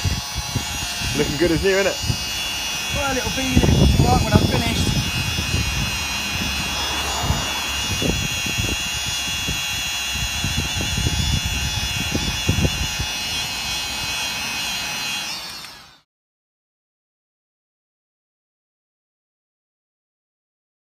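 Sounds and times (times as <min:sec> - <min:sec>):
power tool motor whining: 0:00.0 - 0:16.1.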